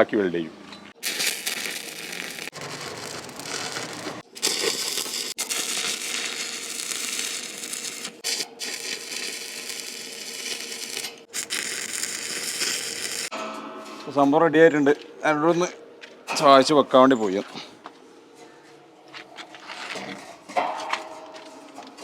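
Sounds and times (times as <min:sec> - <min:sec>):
arc welding crackling hiss: 0:01.0 - 0:13.3.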